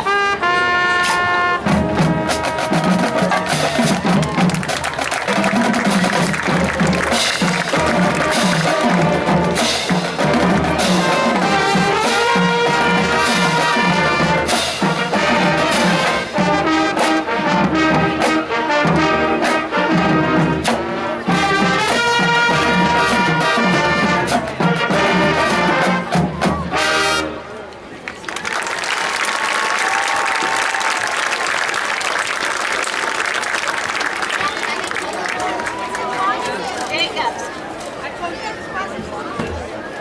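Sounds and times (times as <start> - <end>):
marching band brass: 0.0 - 40.0
steady drumbeat: 1.0 - 26.8.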